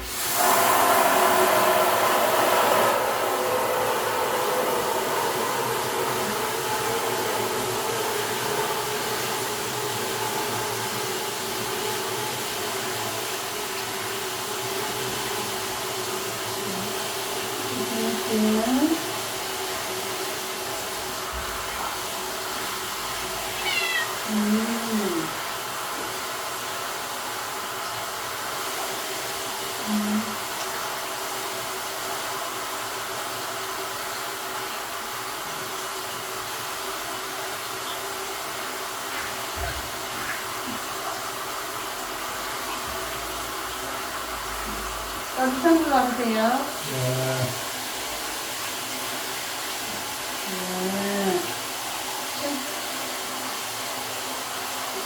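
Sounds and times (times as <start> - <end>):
running water: 0.0 - 55.0
cat meowing: 23.5 - 24.3.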